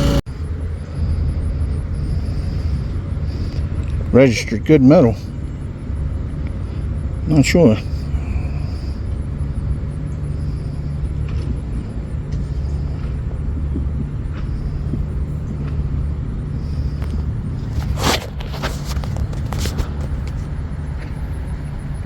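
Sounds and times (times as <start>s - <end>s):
steady low rumble: 0.0s - 22.0s
loud rustle: 16.6s - 20.5s.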